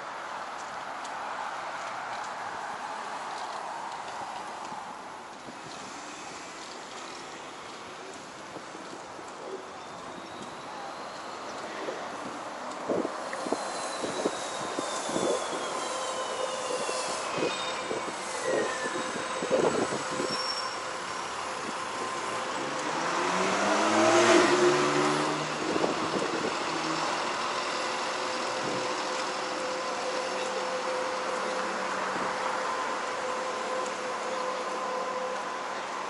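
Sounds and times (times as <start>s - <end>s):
street traffic: 0.0s - 36.0s
high whine gliding down: 12.9s - 35.6s
large vehicle passing close: 21.9s - 32.4s.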